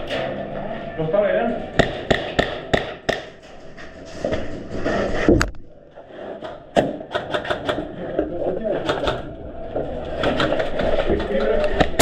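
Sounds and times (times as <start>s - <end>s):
airsoft gun shots: 1.8s - 3.4s
loud crack: 1.8s - 3.4s.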